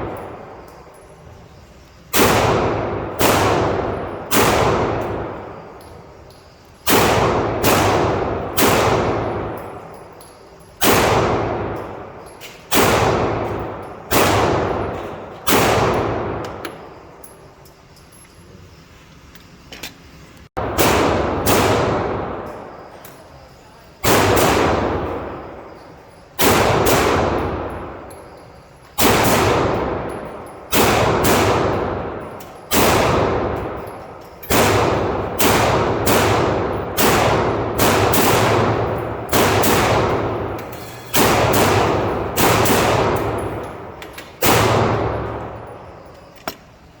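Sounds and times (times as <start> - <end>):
pistol shots with echo: 2.1 - 6.2, 6.8 - 10.2, 10.8 - 17.1, 20.6 - 23.3, 24.0 - 28.4, 29.0 - 46.4.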